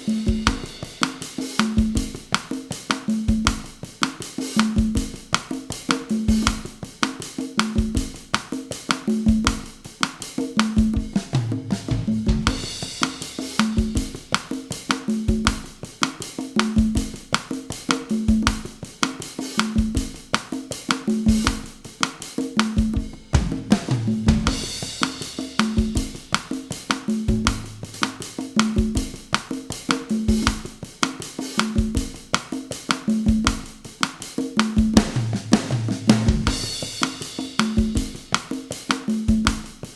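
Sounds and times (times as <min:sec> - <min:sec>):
drum kit and congas groove: 0:00.0 - 0:39.9
cymbal accent: 0:23.4 - 0:29.2.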